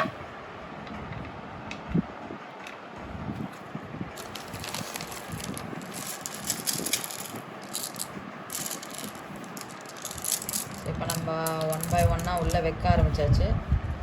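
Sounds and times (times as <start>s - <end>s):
pebbles rattling and clicking: 4.2s - 12.6s.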